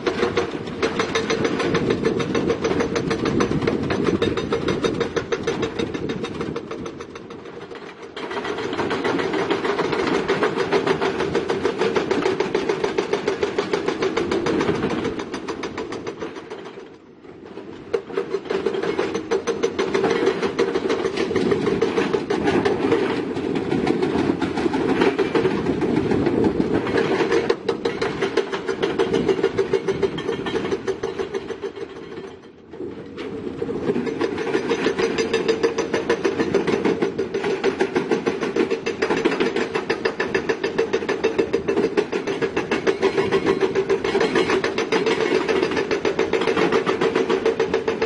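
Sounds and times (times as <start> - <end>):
rapid metallic clatter: 0.0 - 17.0, 17.9 - 32.6, 33.9 - 48.0.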